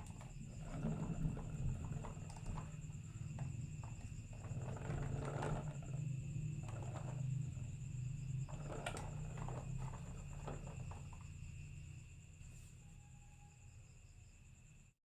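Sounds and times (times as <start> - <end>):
marbles rolling on wooden track: 0.0 - 11.4.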